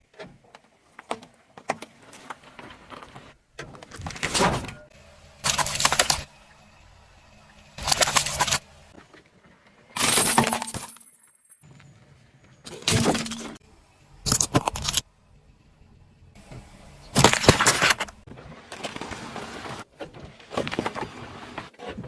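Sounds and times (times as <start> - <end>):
objects crunching under car tyre: 17.1 - 22.0.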